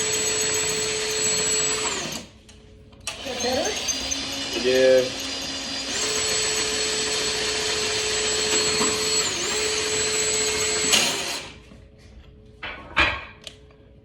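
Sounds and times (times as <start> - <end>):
electric drill boring into brick: 0.0 - 2.3, 3.1 - 11.6.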